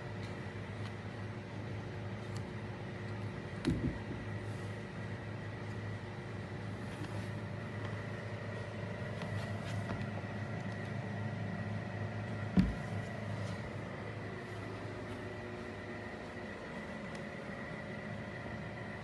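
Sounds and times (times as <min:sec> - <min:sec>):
low hum: 0:00.0 - 0:19.0
dull thump: 0:12.5 - 0:13.0.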